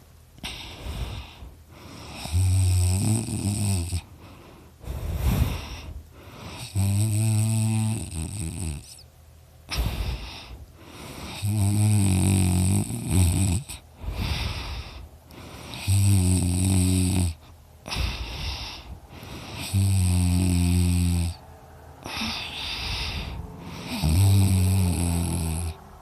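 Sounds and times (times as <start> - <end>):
rushing breath: 0.4 - 2.4, 4.0 - 6.8, 9.7 - 11.5, 13.8 - 16.0, 17.4 - 19.9, 21.3 - 26.0
person snoring: 0.4 - 9.0, 9.7 - 21.4, 22.0 - 26.0.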